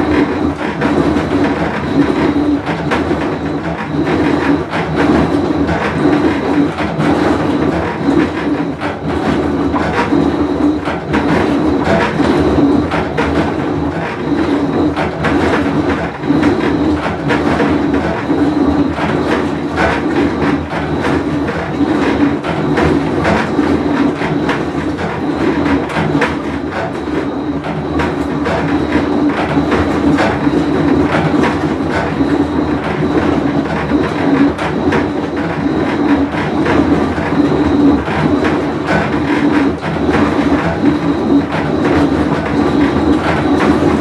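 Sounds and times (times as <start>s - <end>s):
washing machine rattling: 0.0s - 44.0s
washing machine rumbling: 0.0s - 44.0s.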